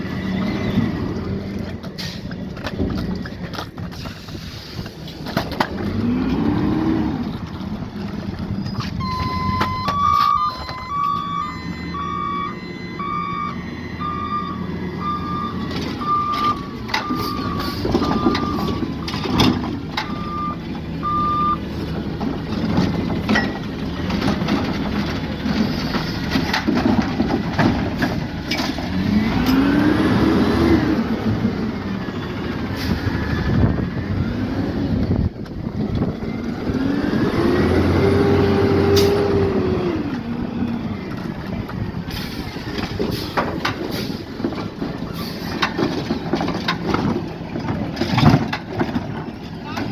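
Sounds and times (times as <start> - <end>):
diesel engine revving: 0.0 - 49.9
backup alarm beeping: 9.0 - 18.9, 20.0 - 21.6
bin clanking and knocking: 15.6 - 20.3, 22.0 - 29.7, 42.7 - 49.9.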